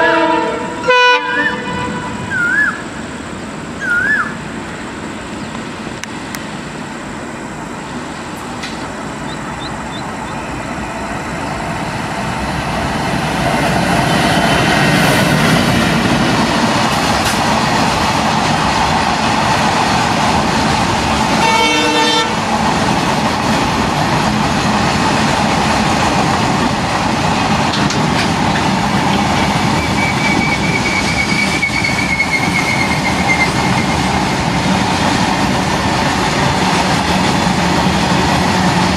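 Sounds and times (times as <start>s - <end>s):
train horn toot: 0.0s - 2.8s, 21.3s - 22.5s
train wheels rumbling on rails: 0.0s - 38.9s.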